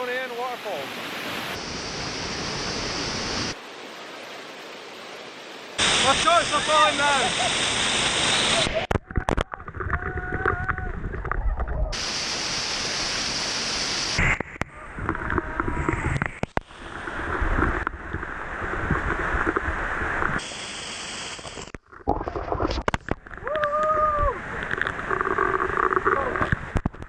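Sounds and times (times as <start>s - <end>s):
waterfall rushing and splashing: 0.0s - 8.9s, 11.9s - 21.7s.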